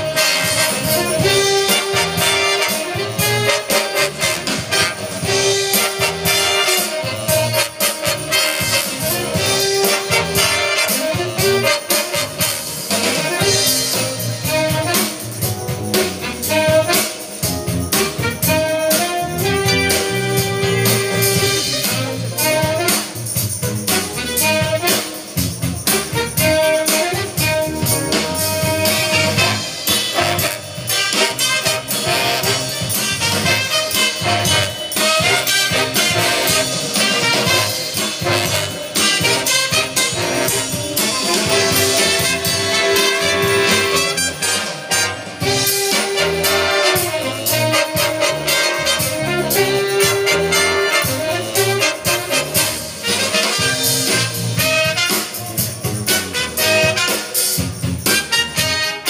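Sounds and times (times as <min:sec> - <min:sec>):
saxophones and brass holding notes: 0:00.0 - 0:23.2, 0:23.8 - 0:25.3, 0:25.9 - 0:57.6, 0:58.2 - 0:59.0
jazz band playing: 0:00.0 - 0:59.0
steady drum kit: 0:00.0 - 0:59.0.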